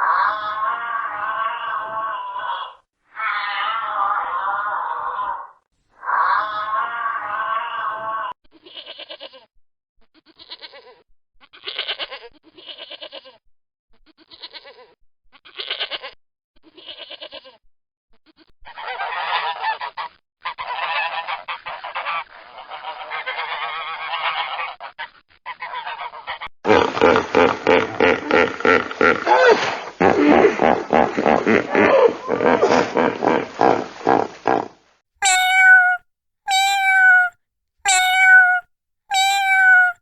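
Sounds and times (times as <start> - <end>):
loud animal sound: 0.0 - 8.3, 25.5 - 37.3, 37.9 - 40.0.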